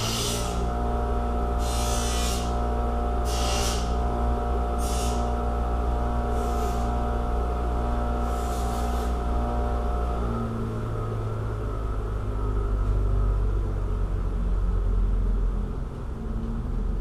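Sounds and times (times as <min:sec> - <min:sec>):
swelling hiss: 0:00.0 - 0:00.7, 0:01.6 - 0:02.6, 0:03.2 - 0:04.0, 0:04.8 - 0:05.4
held music drone: 0:00.0 - 0:15.1.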